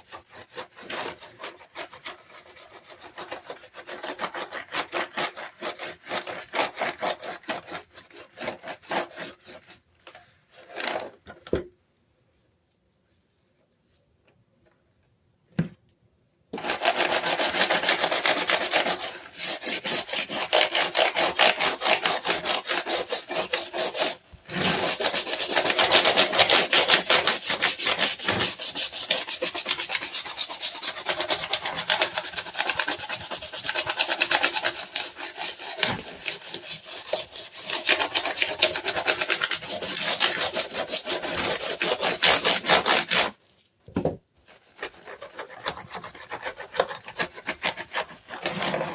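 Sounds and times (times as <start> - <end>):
scrubbing on a keyboard: 16.6 - 43.4, 44.4 - 48.9.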